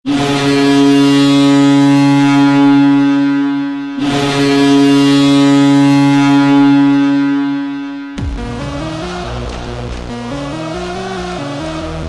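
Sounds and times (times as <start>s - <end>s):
hockey goal horn blast: 0.1s - 11.9s.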